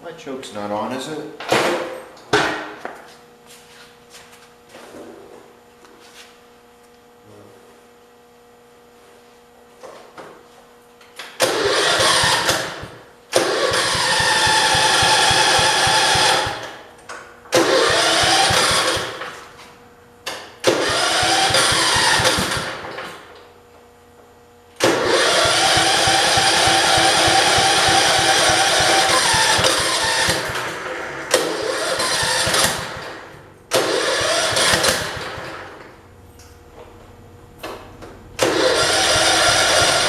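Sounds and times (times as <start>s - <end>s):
garden tractor engine starting: 11.4s - 16.8s, 17.6s - 19.4s, 20.3s - 23.2s, 24.8s - 36.0s, 37.7s - 40.0s.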